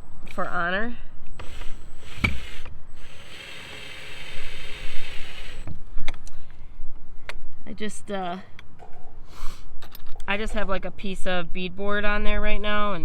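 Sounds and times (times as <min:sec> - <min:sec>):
cordless drill running: 0:01.3 - 0:05.7.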